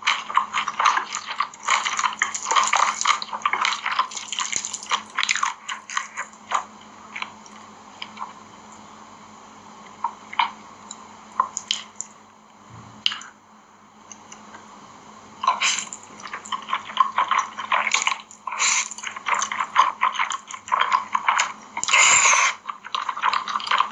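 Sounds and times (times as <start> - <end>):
wet chewing and slurping: 0.0 - 8.4, 10.0 - 12.2, 15.4 - 23.9.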